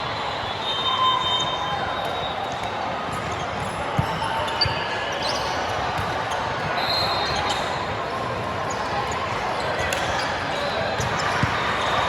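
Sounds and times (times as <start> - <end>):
murmur of spectators: 0.0 - 12.0
shoe squeaks: 4.5 - 5.6, 6.8 - 7.8.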